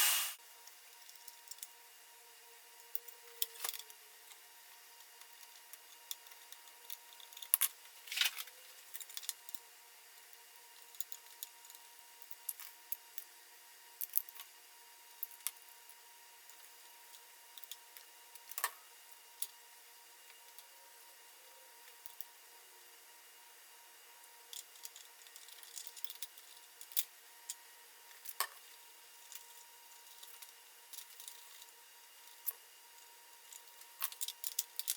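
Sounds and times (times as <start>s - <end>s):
clinks of small metal parts: 33.5s - 34.9s.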